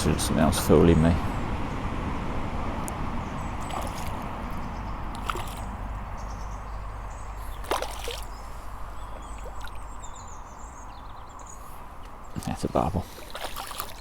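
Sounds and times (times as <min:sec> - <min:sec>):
low background rumble: 0:00.0 - 0:13.1
fish splashing in water: 0:03.5 - 0:06.4, 0:07.2 - 0:10.7, 0:12.0 - 0:14.0.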